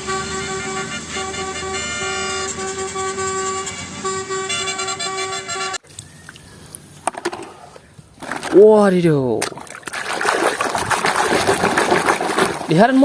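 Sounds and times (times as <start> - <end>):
musical bus horn tune: 0.0 - 5.8.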